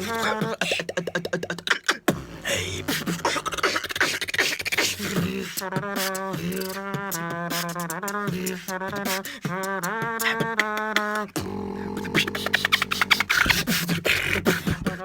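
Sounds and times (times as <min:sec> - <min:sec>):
beatboxing: 0:00.0 - 0:15.0.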